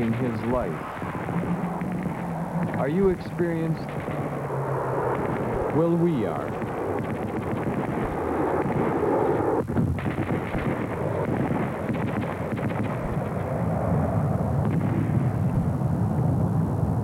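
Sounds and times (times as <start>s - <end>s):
noisy engine rumble: 0.0s - 9.6s
irregular crackles: 0.0s - 15.8s.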